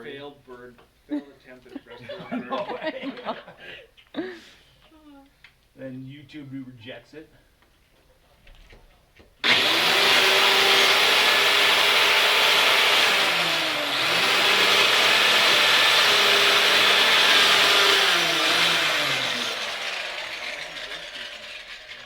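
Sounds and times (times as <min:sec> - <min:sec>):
power tool cutting: 0:09.4 - 0:22.0.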